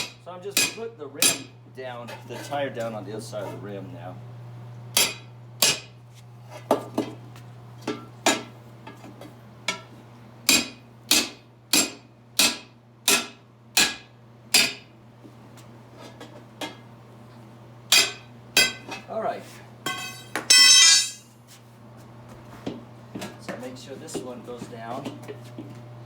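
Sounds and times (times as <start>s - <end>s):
metal strikes on steel rim: 19.9s - 21.3s.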